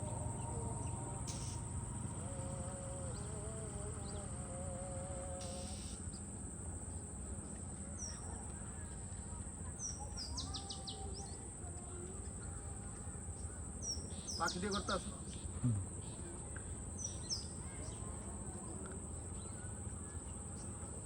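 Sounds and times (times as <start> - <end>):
low background rumble: 0.0 - 5.4
insects droning: 0.0 - 21.0.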